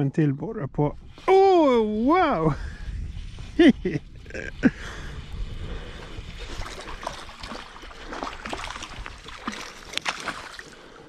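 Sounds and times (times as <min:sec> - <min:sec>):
low rumble: 0:00.5 - 0:09.2
water sloshing around boat: 0:05.7 - 0:11.0.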